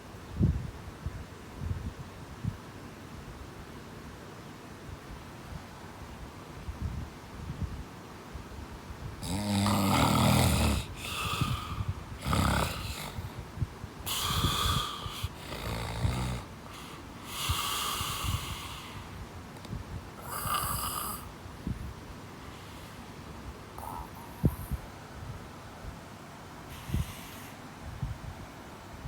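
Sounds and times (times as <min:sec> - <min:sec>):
person snoring: 0:09.2 - 0:13.4, 0:14.1 - 0:19.1, 0:20.2 - 0:21.3, 0:23.8 - 0:24.8.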